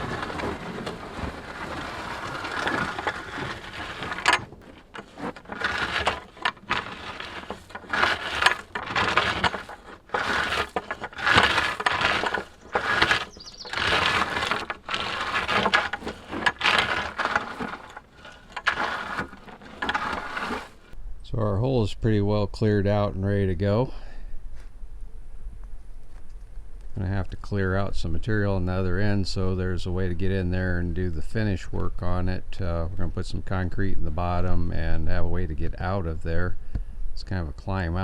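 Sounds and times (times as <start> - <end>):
rock and gravel scraping: 0.0 - 21.0.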